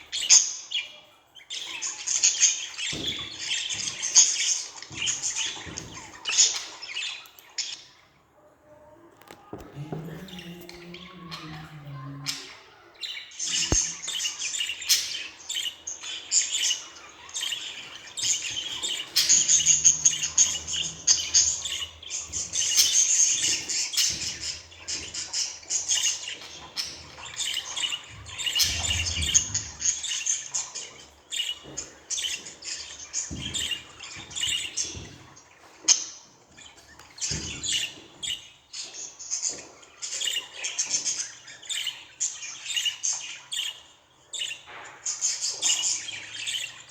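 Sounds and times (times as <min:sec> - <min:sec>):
budgerigar chirping and warbling: 0:10.0 - 0:30.2.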